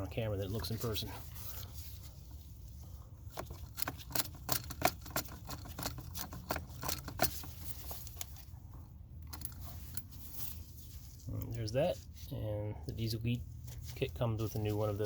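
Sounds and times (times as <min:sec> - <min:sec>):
small hard parts clicking: 0:03.3 - 0:08.3.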